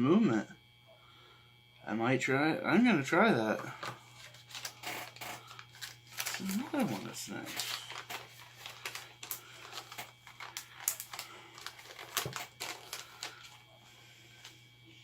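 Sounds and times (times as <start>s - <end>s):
plastic package crinkling: 3.8s - 13.7s.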